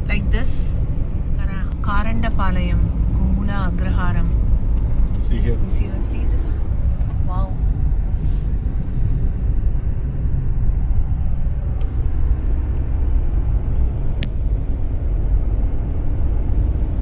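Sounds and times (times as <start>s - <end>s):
car tyres and engine rumble: 0.0s - 17.0s.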